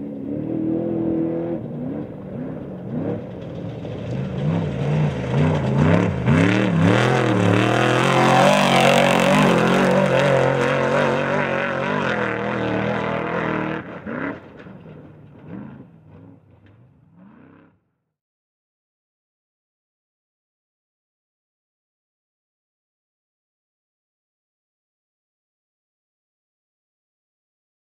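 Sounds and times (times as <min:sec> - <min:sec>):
race truck engine revving: 0:00.0 - 0:17.8.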